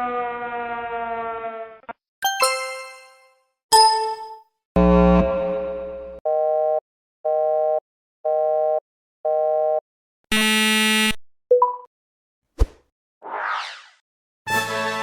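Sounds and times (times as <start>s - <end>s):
harsh buzzer: 4.8s - 7.8s, 10.3s - 11.2s.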